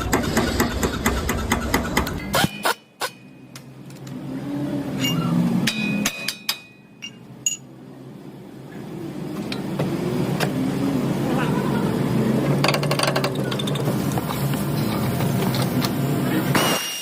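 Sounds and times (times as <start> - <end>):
metallic knocks and clinks: 5.0 - 7.7.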